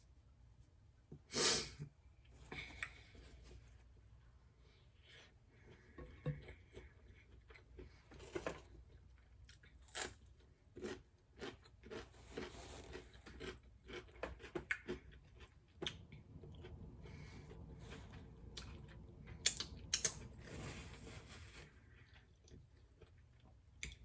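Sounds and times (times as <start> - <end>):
chewing and crunching food: 5.0 - 24.0.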